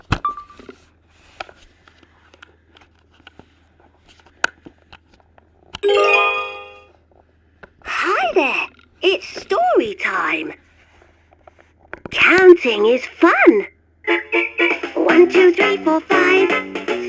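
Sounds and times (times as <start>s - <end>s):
bright electronic chime: 5.8s - 6.9s.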